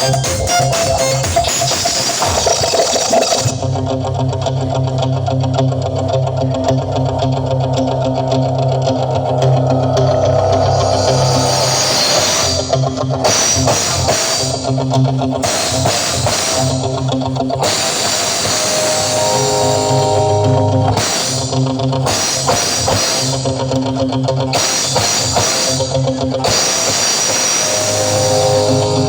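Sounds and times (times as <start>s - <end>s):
loud instrumental rock music: 0.0s - 29.0s.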